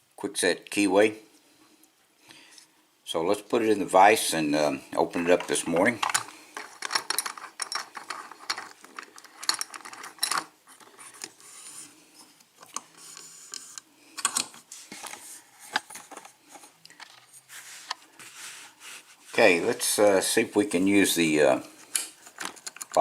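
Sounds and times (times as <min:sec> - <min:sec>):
metal lock clicking and scraping: 0:05.9 - 0:10.6.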